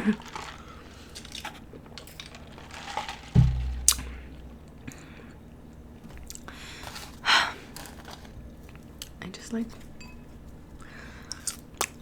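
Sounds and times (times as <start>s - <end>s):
low thump: 3.4s - 4.5s.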